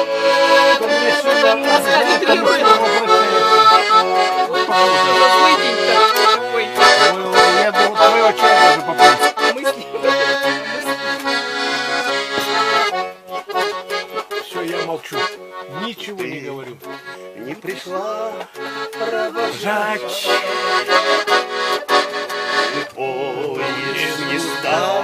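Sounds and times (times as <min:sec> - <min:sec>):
instrumental melody over chords: 0:00.0 - 0:25.0.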